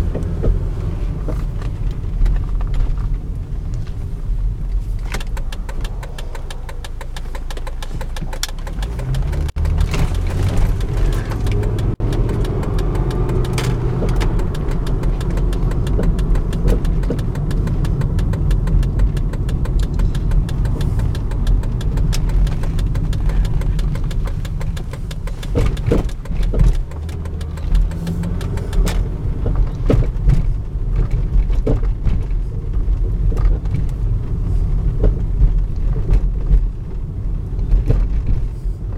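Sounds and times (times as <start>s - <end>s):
car running and road rumble: 0.0s - 38.9s
sharp knocks from car: 5.3s - 28.8s.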